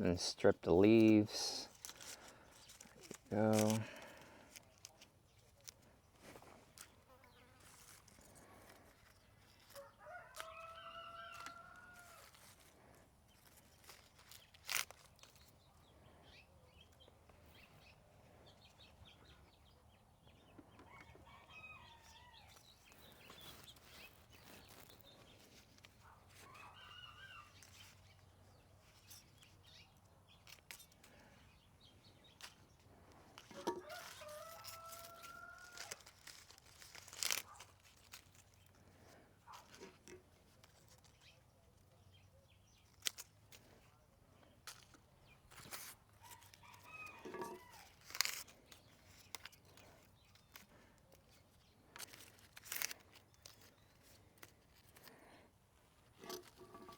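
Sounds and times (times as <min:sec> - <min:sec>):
rooster crowing: 0:09.8 - 0:12.3, 0:20.9 - 0:22.5, 0:33.7 - 0:36.0.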